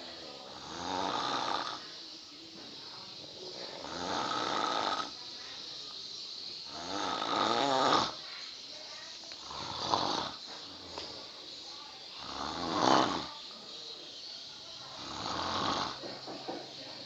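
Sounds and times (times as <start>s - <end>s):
person snoring: 0.5s - 1.8s, 3.6s - 5.2s, 6.6s - 8.2s, 9.4s - 11.1s, 12.2s - 13.3s, 14.9s - 16.0s.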